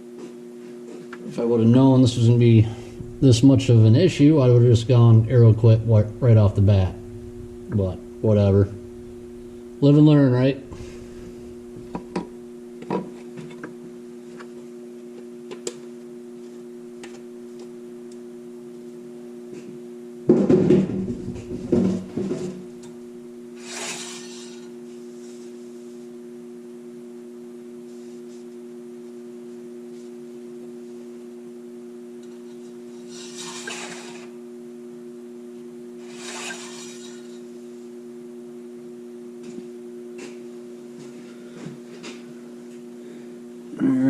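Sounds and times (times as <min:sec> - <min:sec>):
two-tone electrical hum: 0:00.0 - 0:44.0
scraping and rubbing: 0:36.0 - 0:37.3.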